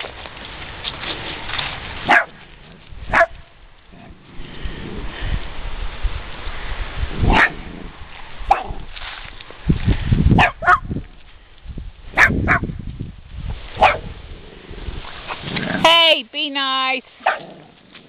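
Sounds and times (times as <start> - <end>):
dogs barking and yipping: 2.0 - 2.4, 3.1 - 3.5, 7.3 - 7.6, 8.5 - 8.8, 10.4 - 10.9, 12.2 - 12.7, 13.8 - 14.1, 17.2 - 17.6.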